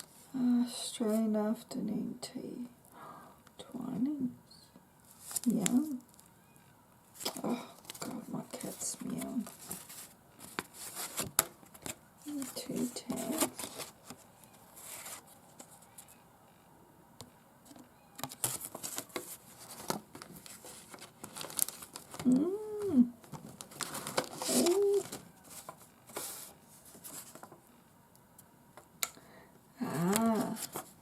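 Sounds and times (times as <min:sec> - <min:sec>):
paper and packaging crinkling: 0:05.1 - 0:06.3, 0:07.2 - 0:16.2, 0:18.2 - 0:22.4, 0:23.2 - 0:27.6, 0:30.0 - 0:31.0.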